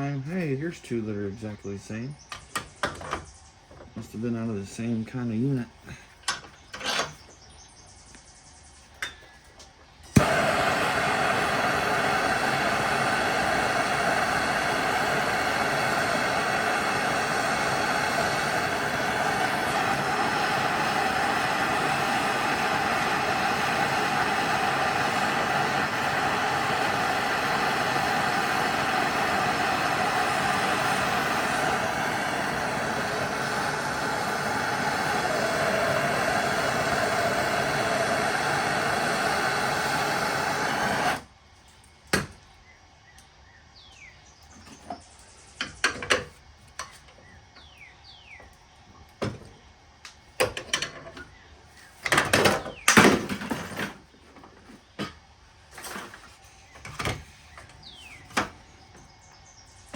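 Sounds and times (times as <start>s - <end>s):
loud steady rushing noise: 10.2s - 41.2s
bird chirps: 42.6s - 45.8s, 47.2s - 48.5s, 56.4s - 59.9s.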